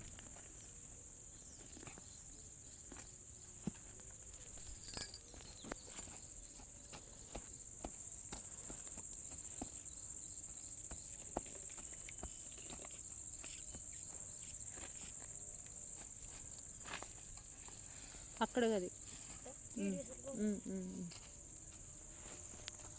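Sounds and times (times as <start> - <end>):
insects droning: 0.0 - 22.9.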